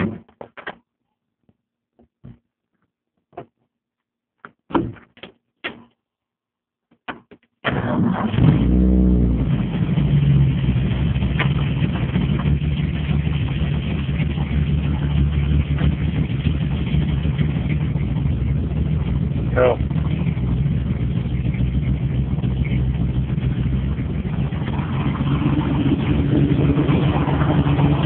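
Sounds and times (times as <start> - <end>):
car engine starting and idling: 7.6 - 28.0.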